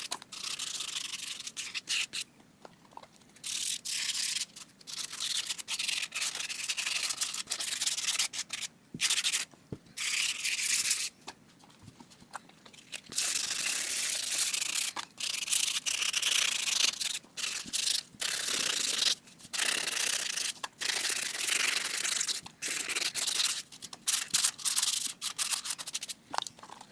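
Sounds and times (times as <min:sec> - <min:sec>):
sandpaper rubbing gritty hiss: 0:13.1 - 0:26.2.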